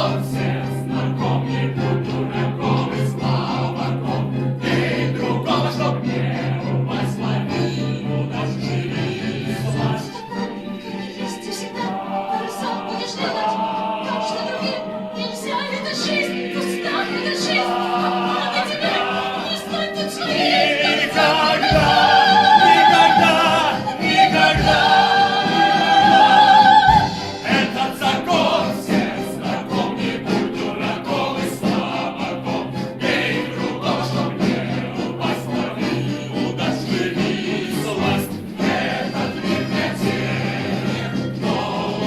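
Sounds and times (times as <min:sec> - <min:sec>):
choir singing held notes: 0:00.0 - 0:42.0.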